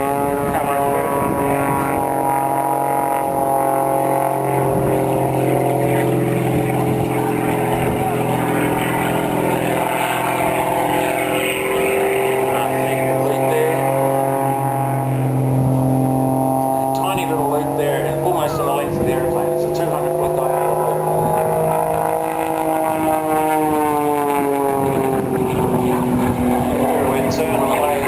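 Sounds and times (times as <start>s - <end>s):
propeller plane engine droning: 0.0s - 28.0s.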